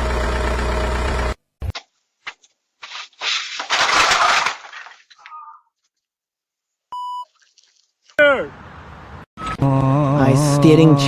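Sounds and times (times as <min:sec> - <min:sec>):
loud crashing breaking noise: 0:03.6 - 0:04.8
short steady beep: 0:06.9 - 0:07.3.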